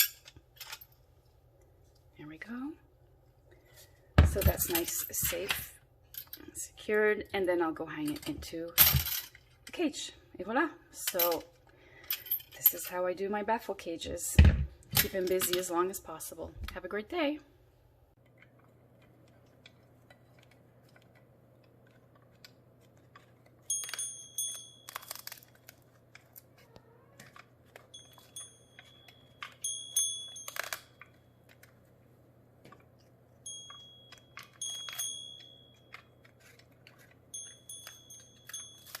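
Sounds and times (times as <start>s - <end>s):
clicks and light crunching: 18.2s - 32.0s, 32.6s - 39.0s
small metal bell jingling: 23.7s - 25.2s, 27.9s - 30.9s, 33.4s - 36.0s, 37.3s - 39.0s.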